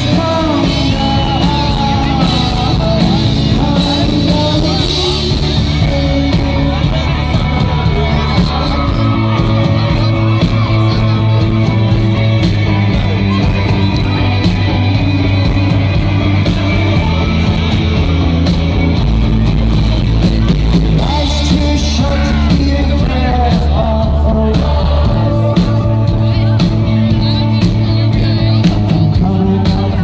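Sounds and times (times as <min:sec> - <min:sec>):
live rock band playing: 0:00.0 - 0:30.0
man singing: 0:00.0 - 0:30.0.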